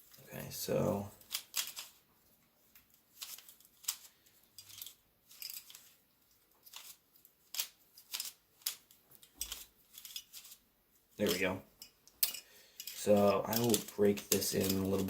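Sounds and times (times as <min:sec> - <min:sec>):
plastic puzzle clicking: 0:01.2 - 0:02.0, 0:02.8 - 0:05.9, 0:06.6 - 0:10.6, 0:12.2 - 0:15.0.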